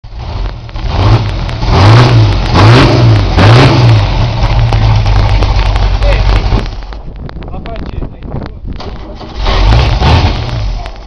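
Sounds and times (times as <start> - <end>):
motorcycle engine revving and idling: 0.1 - 7.6.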